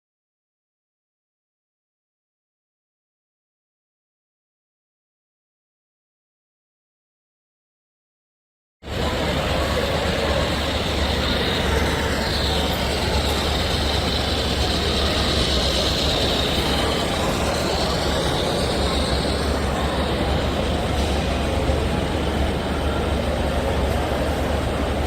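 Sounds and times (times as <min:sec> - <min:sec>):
train rumbling with high whine: 0:08.8 - 0:25.0.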